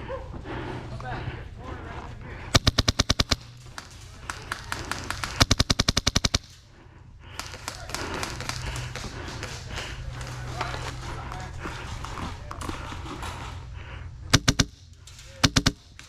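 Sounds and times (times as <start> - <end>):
airsoft gun firing bursts: 2.5 - 6.6, 7.4 - 10.4, 14.3 - 14.8, 15.4 - 16.0
gun clicks: 2.5 - 6.6, 14.3 - 16.0.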